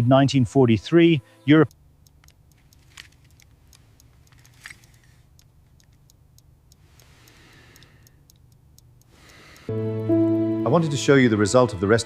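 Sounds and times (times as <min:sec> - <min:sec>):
faint ticking clicks: 0:01.6 - 0:09.7.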